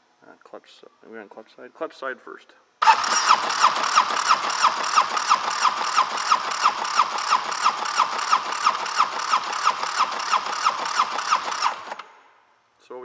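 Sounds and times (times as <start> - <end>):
engine cranking without firing: 2.8 - 12.2.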